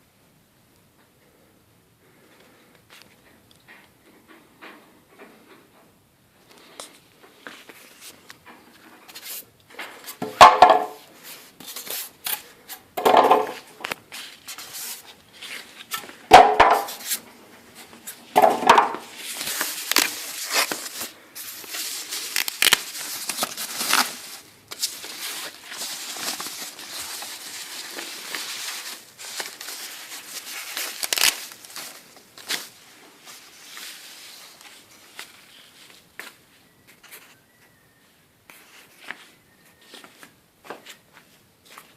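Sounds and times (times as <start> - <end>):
packing material rustling: 10.0 - 36.4
packaging scraping: 11.2 - 32.8.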